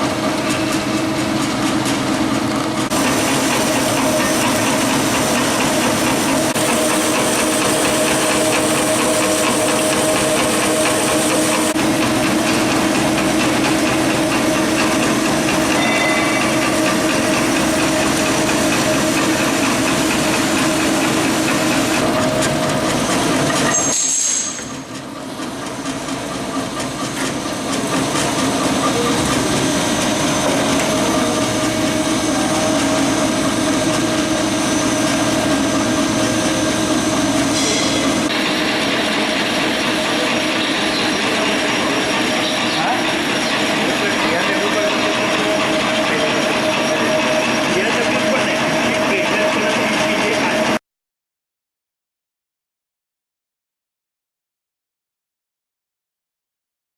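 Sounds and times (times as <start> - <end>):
band saw cutting steel: 2.9 - 25.0, 27.3 - 50.8
band saw squealing: 15.7 - 17.9, 21.8 - 25.0, 28.4 - 50.6.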